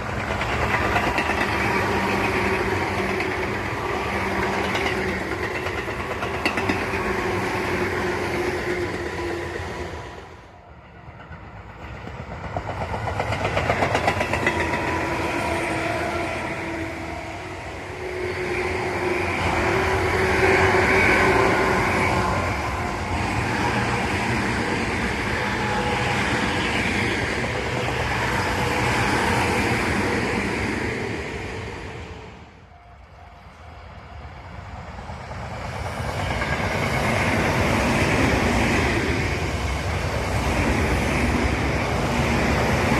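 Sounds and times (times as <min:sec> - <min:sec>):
train wheels clattering on rails: 0:00.0 - 0:09.8, 0:10.9 - 0:17.2.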